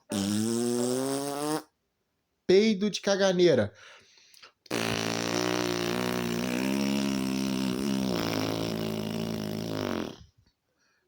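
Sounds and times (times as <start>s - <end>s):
person blowing mouth raspberry: 0.0s - 1.8s, 4.7s - 10.4s.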